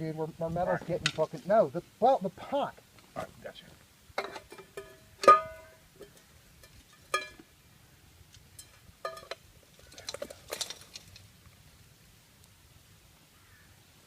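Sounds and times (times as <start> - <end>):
steel tongs clanking on crucible: 4.2 - 7.5, 8.4 - 11.2.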